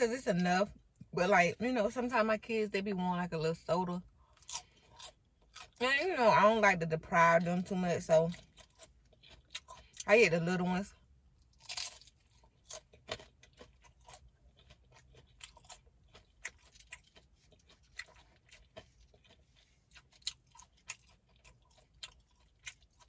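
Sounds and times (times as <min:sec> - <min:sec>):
crunchy taco chewing: 0:04.2 - 0:05.8, 0:07.4 - 0:10.1, 0:10.8 - 0:23.0.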